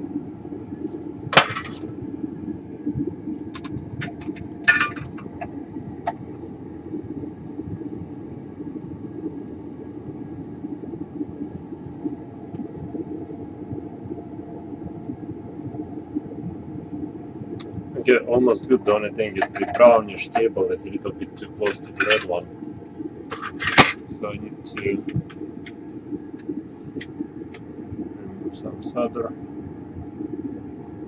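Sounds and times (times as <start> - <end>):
low background hum: 0.0 - 31.0.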